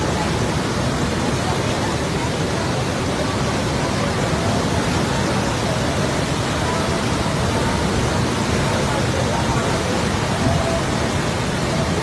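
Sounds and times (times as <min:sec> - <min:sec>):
river floodwater rushing: 0:00.0 - 0:12.0.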